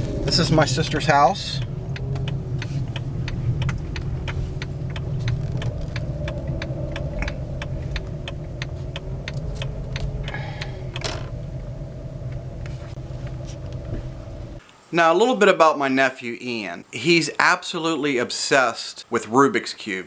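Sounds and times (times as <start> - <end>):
car engine rumbling: 0.0 - 14.6
light clicks and ticks: 1.6 - 11.4.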